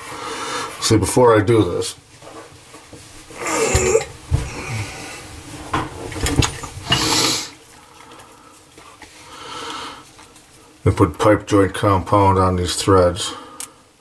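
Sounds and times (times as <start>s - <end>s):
rubbing and scraping on pipe parts: 5.4s - 9.3s.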